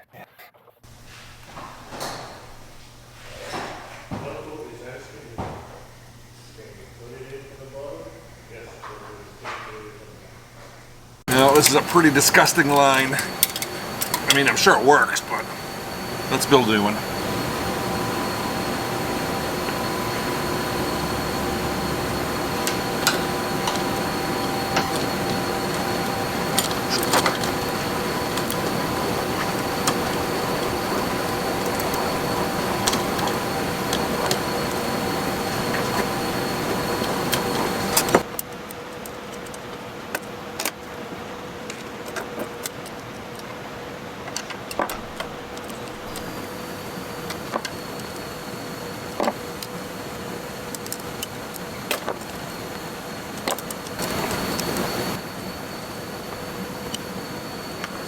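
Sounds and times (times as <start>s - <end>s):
machine hum: 0.9s - 38.2s, 45.0s - 58.0s
metal tools clicking and tapping: 12.8s - 14.4s.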